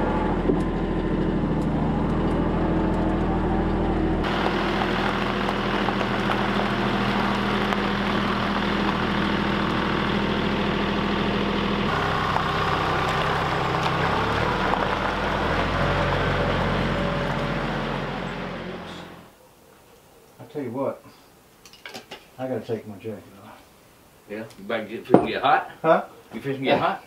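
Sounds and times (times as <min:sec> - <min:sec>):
truck engine running: 0:00.0 - 0:19.3.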